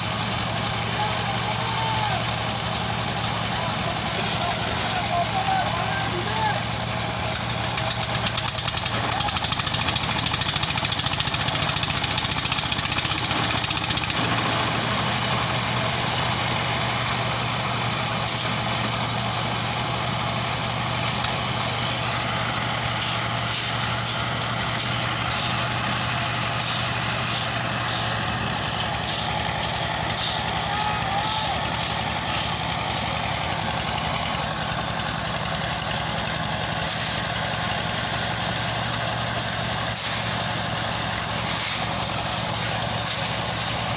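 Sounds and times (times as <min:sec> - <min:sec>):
heavy engine running: 0:00.0 - 0:43.9
sharp clicks and rattles: 0:02.2 - 0:04.2, 0:06.6 - 0:16.9.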